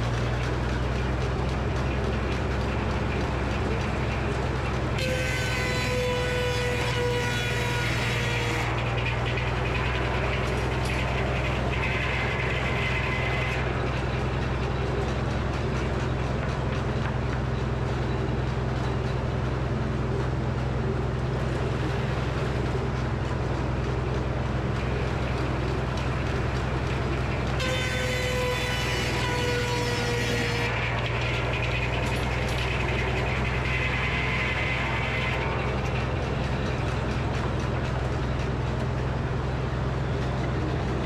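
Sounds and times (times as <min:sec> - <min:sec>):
saw blade cutting a log: 0:00.0 - 0:17.4, 0:21.1 - 0:41.0
sawmill engine running: 0:00.0 - 0:41.0.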